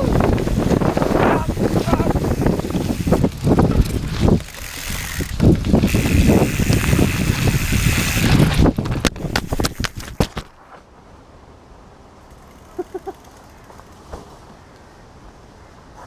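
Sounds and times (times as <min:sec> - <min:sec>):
wind buffeting microphone: 0:00.0 - 0:10.3
bike tyres and frame rattling: 0:00.0 - 0:10.8, 0:12.2 - 0:14.6.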